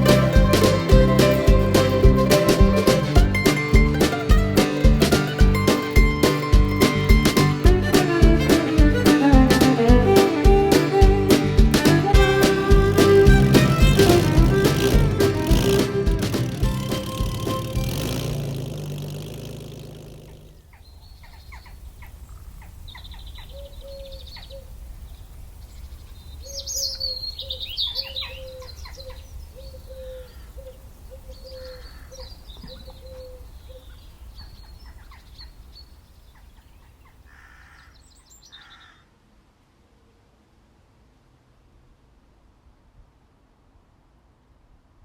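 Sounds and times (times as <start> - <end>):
music: 0.0 - 18.2
birds chirping and calling: 26.4 - 39.0.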